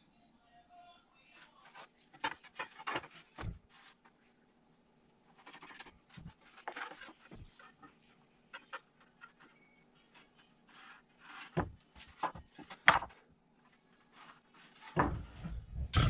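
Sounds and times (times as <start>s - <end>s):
wooden boards scraping: 10.2s - 13.2s, 14.0s - 16.0s
dull thuds: 15.0s - 16.0s.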